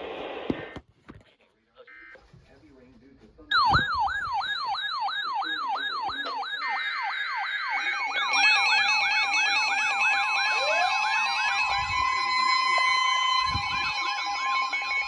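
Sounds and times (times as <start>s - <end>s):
steady alert tones: 3.5s - 15.0s.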